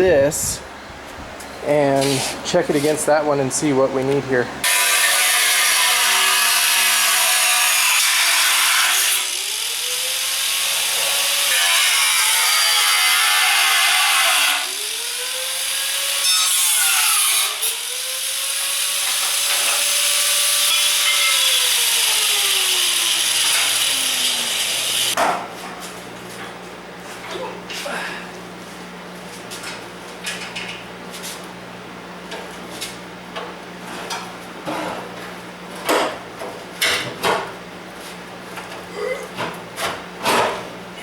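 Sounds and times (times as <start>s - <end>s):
power tool cutting sheet metal: 4.6s - 25.2s.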